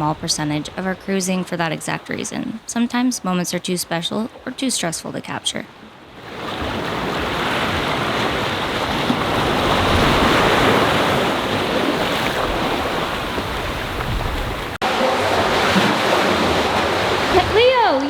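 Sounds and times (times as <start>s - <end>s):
waves washing on shore: 4.2s - 18.0s
wind buffeting microphone: 6.6s - 18.0s.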